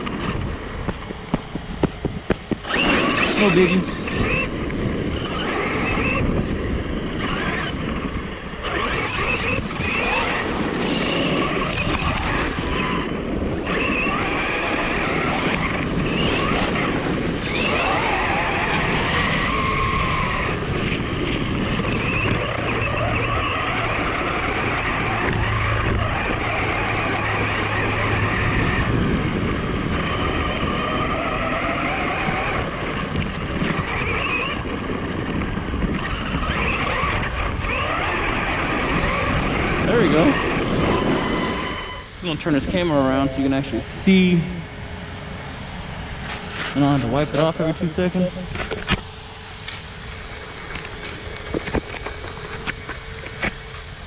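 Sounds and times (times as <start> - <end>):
rc car electric motor whining: 0.0 - 54.0
tyres churning wet mud: 2.5 - 4.5, 13.7 - 28.7.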